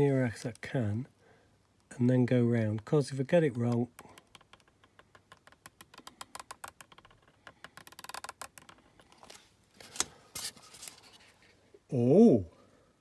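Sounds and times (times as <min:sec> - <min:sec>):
marker tip scratching on plastic: 0:04.2 - 0:09.4.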